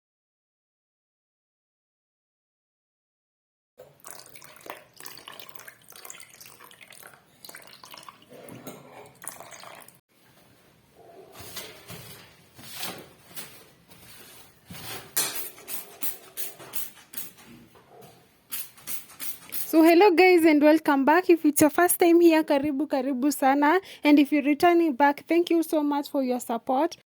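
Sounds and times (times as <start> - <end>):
water splashing in sink: 3.8 - 10.0.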